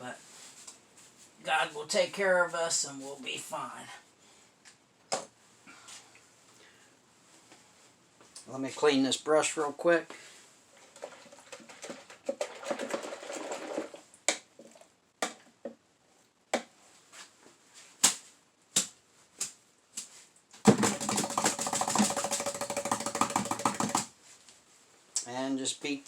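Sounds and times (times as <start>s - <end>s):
brush knocking: 20.7s - 24.1s
rapid strikes of brush beaten: 20.7s - 24.1s.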